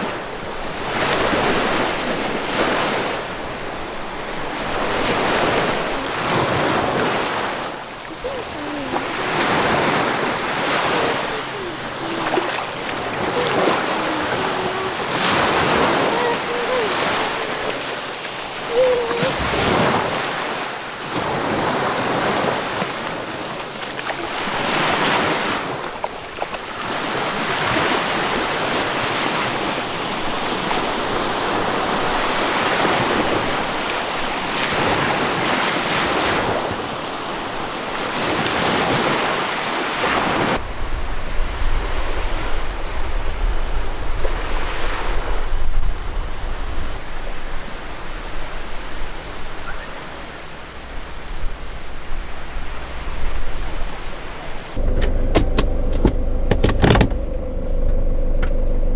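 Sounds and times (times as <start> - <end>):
waves breaking: 0.0 - 40.6.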